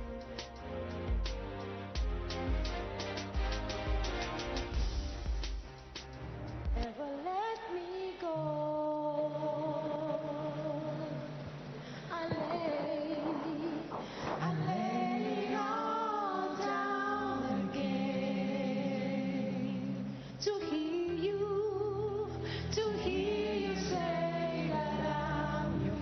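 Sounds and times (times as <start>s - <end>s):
woman singing slow melody: 6.8s - 26.0s.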